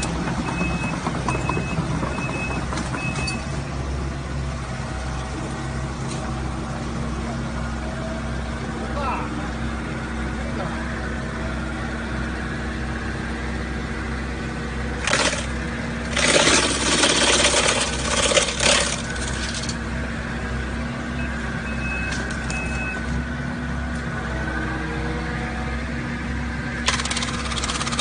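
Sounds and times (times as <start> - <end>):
diesel engine drone: 0.0 - 28.0
wood chipper crunching wood: 15.0 - 19.8, 26.8 - 28.0.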